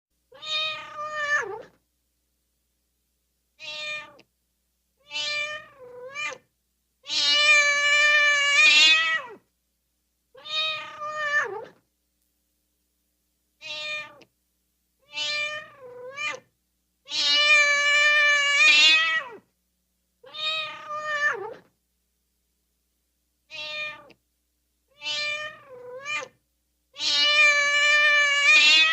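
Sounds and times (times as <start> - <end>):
cat meowing: 0.3 - 1.8, 3.6 - 4.3, 5.0 - 9.4, 10.4 - 11.8, 13.6 - 14.3, 15.0 - 16.5, 17.1 - 19.4, 20.2 - 21.7, 23.5 - 24.2, 24.9 - 26.4, 27.0 - 28.9.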